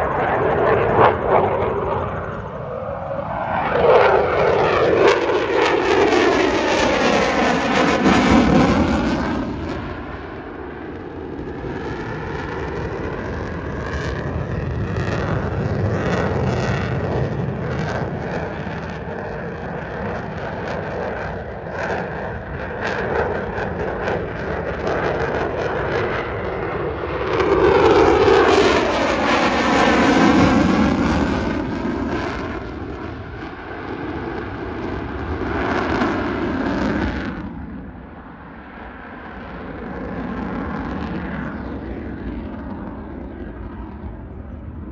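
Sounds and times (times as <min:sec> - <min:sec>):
jet flying past: 0:00.0 - 0:44.9.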